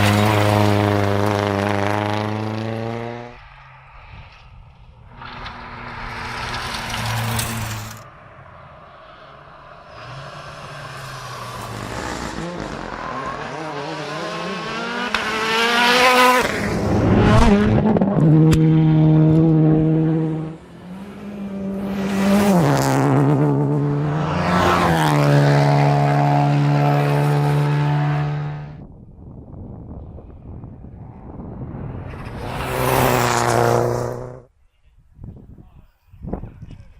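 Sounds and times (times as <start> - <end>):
rally car engine at high revs: 0.0 - 3.4, 9.9 - 28.8, 32.2 - 34.5.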